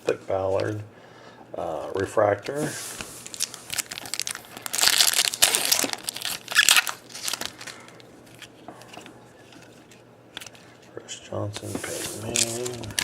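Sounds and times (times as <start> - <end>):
foil wrapper tearing and crinkling: 3.2 - 8.5, 12.0 - 13.0.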